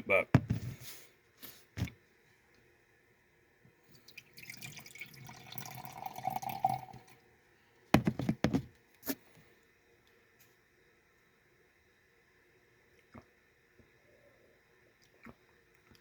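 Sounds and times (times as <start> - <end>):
coffee being sipped and slurped: 15.0 - 16.0.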